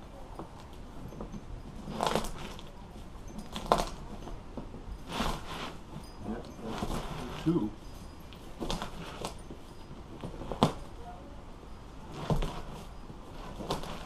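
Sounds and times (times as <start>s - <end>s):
upholstery scraping and rustling: 5.0s - 7.8s, 12.1s - 14.0s.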